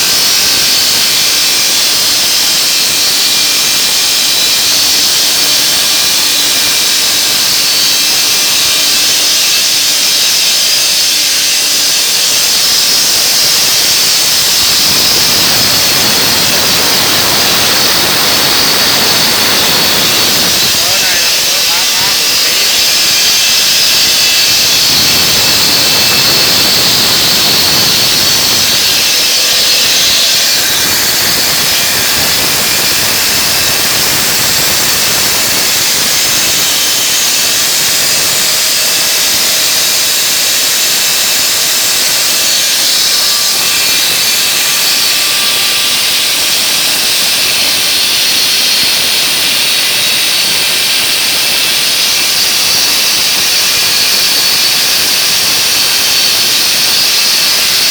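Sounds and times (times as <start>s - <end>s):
stone-cutting saw grinding: 0.0s - 57.9s.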